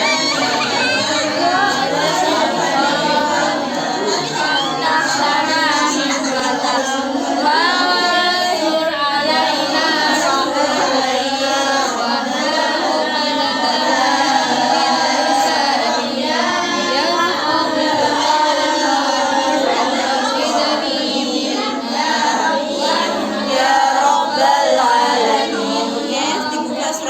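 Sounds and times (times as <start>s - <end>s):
children chanting recitation: 0.0s - 27.0s.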